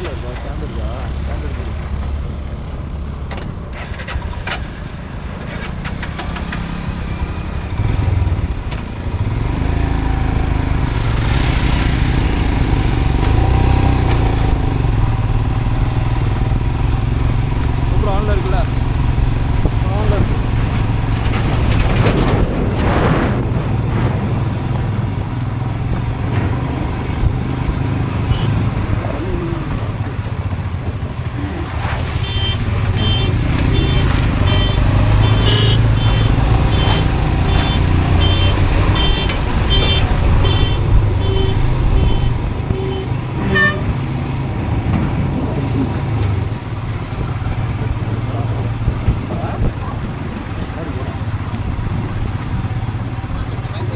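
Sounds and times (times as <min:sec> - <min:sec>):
motorcycle engine rumble: 0:00.0 - 0:53.9
road and wind noise: 0:00.0 - 0:53.9
vehicle electronic beeping: 0:16.8 - 0:17.3, 0:32.1 - 0:44.0.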